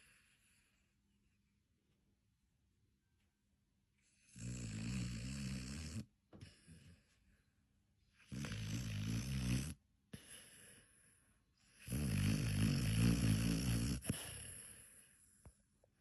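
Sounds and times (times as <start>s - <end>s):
dog snoring: 4.1s - 7.0s, 8.2s - 10.5s, 11.6s - 15.0s.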